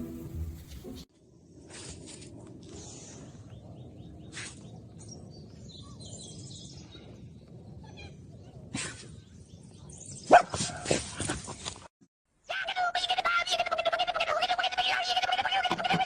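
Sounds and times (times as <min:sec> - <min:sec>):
dog barking: 0:10.3 - 0:10.8.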